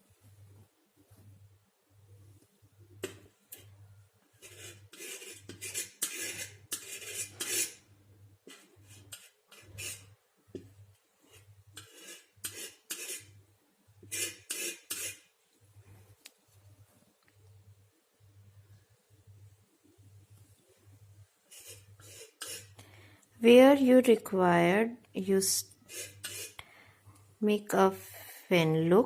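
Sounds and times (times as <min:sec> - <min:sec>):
painting knife scraping paint: 0:04.4 - 0:07.8, 0:08.4 - 0:13.4, 0:14.0 - 0:15.3, 0:21.5 - 0:22.8, 0:25.9 - 0:26.6.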